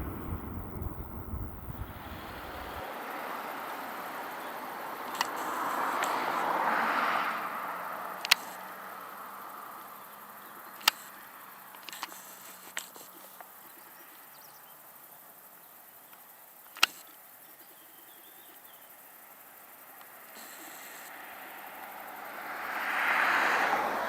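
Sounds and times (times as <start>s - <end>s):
distant jet aircraft: 0.0s - 10.2s
sharp clicks: 8.2s - 8.6s
faint bird chirps: 12.2s - 16.4s, 17.0s - 19.1s.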